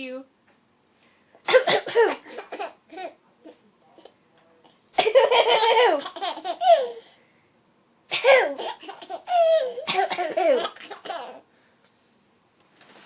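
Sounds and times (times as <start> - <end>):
baby laughing: 5.0 - 7.1, 8.4 - 11.4.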